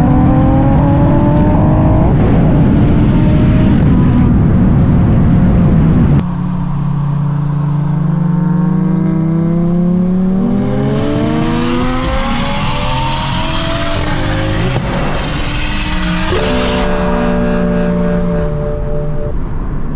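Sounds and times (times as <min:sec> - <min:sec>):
car engine accelerating: 0:00.0 - 0:19.5
faint high whine: 0:16.0 - 0:19.5.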